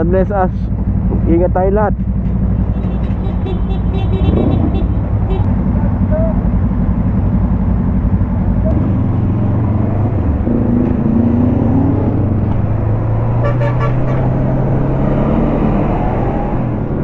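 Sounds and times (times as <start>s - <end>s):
motorcycle engine running: 0.7s - 11.1s
motorcycle horn toot: 2.7s - 5.5s, 13.4s - 14.2s.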